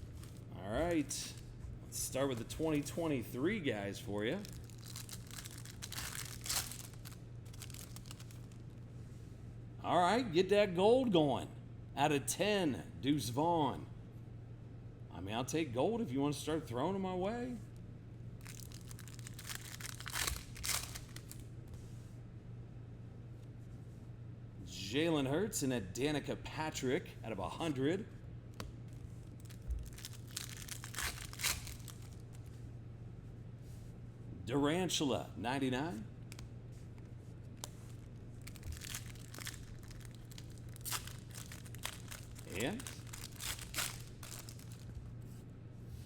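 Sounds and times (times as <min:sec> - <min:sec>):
steady low hum: 0:00.0 - 0:46.0
foil wrapper crinkling and tearing: 0:04.1 - 0:08.7, 0:18.4 - 0:21.4, 0:29.2 - 0:32.4, 0:37.6 - 0:45.0.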